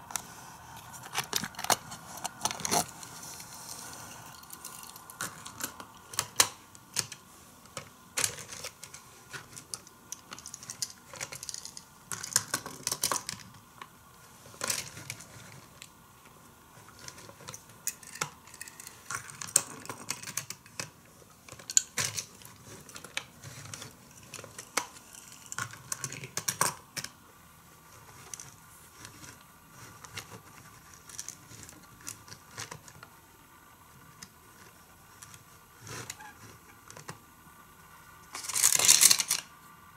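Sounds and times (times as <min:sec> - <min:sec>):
toy cars clicking and clattering: 0:03.8 - 0:13.6, 0:16.9 - 0:27.2, 0:30.0 - 0:33.1, 0:38.3 - 0:39.5.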